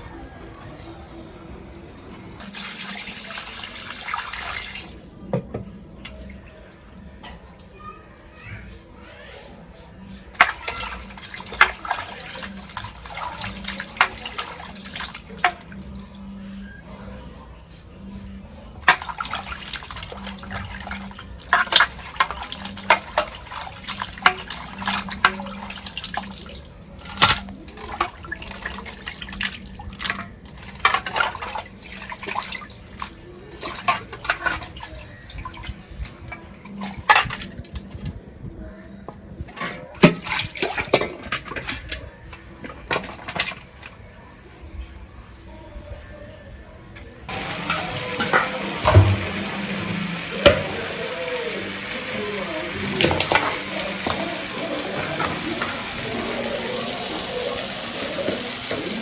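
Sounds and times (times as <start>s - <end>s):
water running into sink: 2.4s - 7.4s, 10.4s - 16.0s, 18.8s - 35.8s, 47.3s - 59.0s
dishes clinking: 47.3s - 59.0s.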